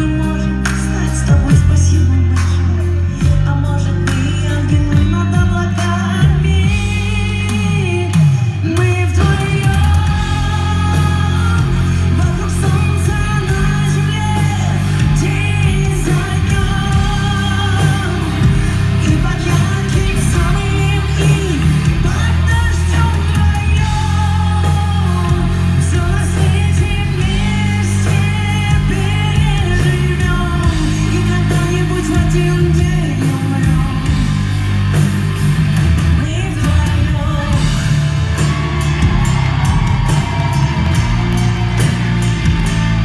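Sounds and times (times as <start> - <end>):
electric guitar: 0.0 - 43.0
heavy bass: 0.0 - 43.0
lead vocal melody: 0.0 - 43.0
live rock band: 0.0 - 43.0.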